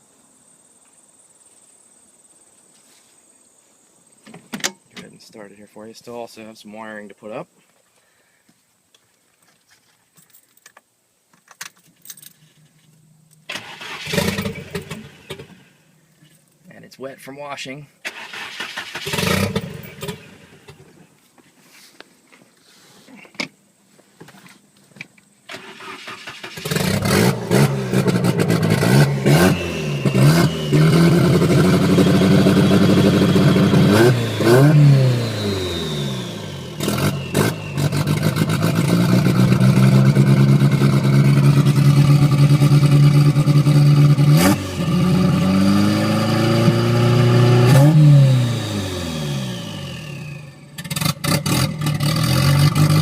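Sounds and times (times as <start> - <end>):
car engine idling and revving: 13.3 - 15.9, 18.1 - 20.9, 26.0 - 53.0.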